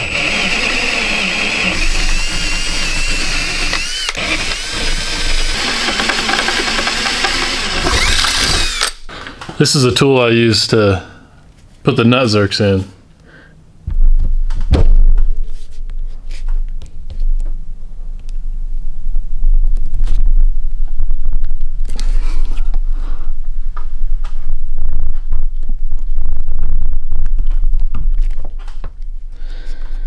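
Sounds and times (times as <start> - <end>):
low rumble: 13.8 - 29.4.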